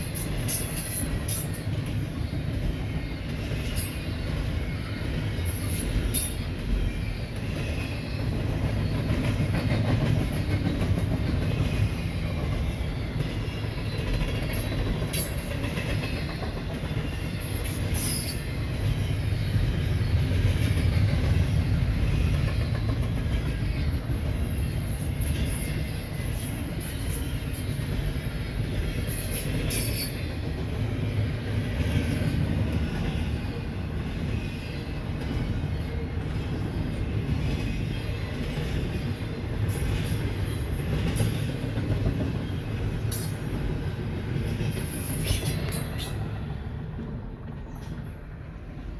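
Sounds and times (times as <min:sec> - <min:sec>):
freight train wheels rumbling: 0:00.0 - 0:48.9
high-pitched wheel squeals: 0:17.0 - 0:20.2, 0:29.1 - 0:30.4.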